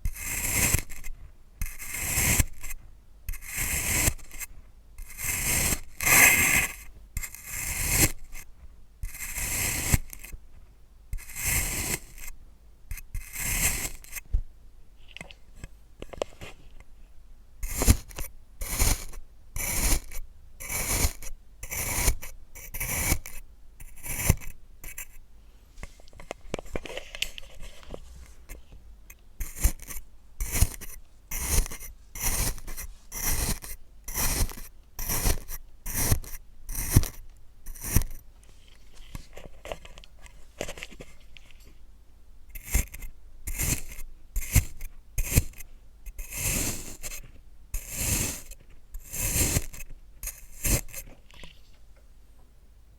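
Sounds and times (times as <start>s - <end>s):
blade slicing sand: 29.4s - 37.2s.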